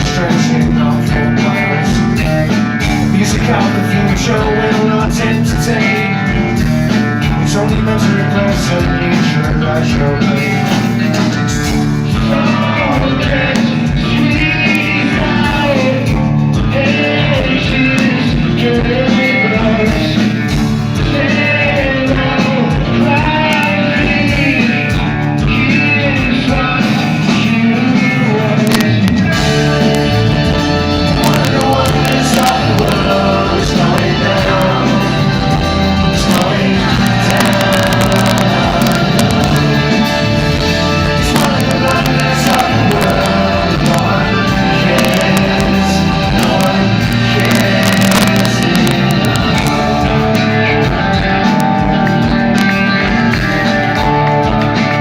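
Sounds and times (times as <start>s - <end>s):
live rock band playing: 0.0s - 55.0s
wavering vocal melody: 29.3s - 50.8s.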